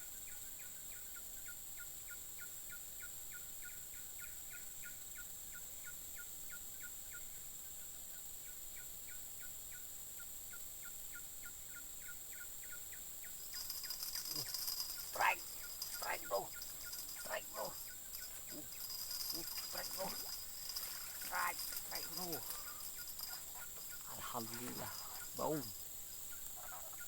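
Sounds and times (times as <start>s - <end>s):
short chirping calls: 13.4s - 27.0s
high-pitched insect drone: 13.5s - 27.0s.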